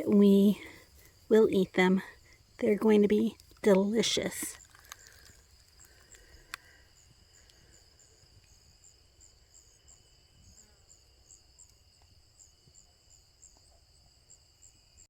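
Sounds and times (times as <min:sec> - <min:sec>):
insects trilling and chirping: 0:00.0 - 0:15.0.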